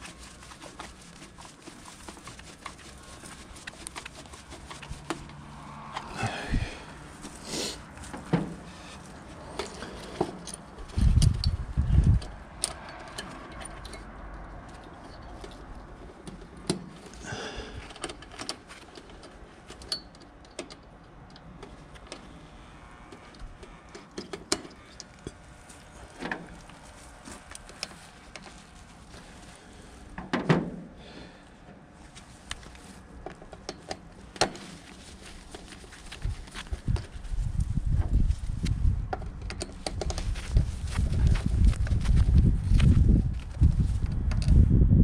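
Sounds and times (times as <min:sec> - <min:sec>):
hand tools clicking and clattering: 0:00.0 - 0:22.2, 0:32.5 - 0:37.2, 0:39.2 - 0:42.2.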